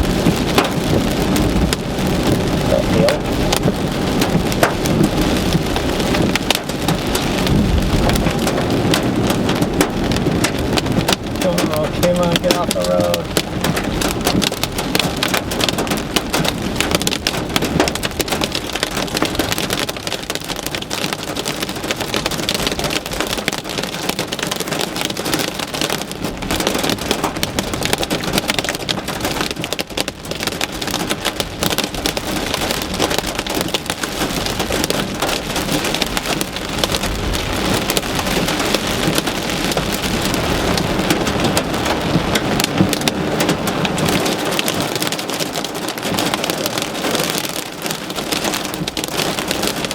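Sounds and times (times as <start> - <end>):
heavy rain on a car roof: 0.0 - 49.9.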